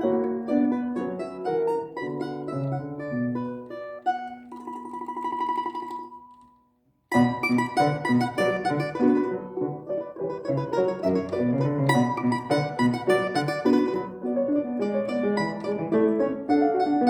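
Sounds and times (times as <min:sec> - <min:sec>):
plucked string instrument classical piece: 0:00.0 - 0:17.0.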